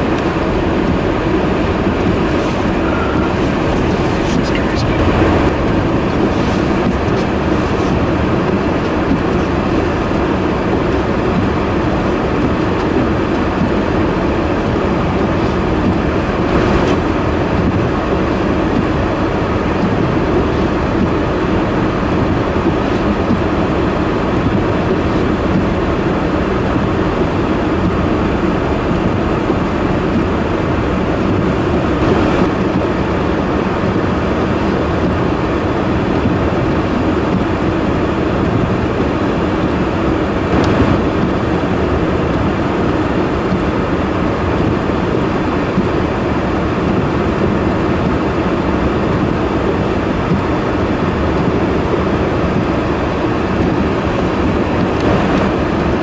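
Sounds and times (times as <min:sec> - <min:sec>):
loud rushing noise: 0:00.0 - 0:08.8, 0:16.2 - 0:17.6, 0:31.8 - 0:32.9, 0:40.2 - 0:43.2, 0:53.5 - 0:56.0.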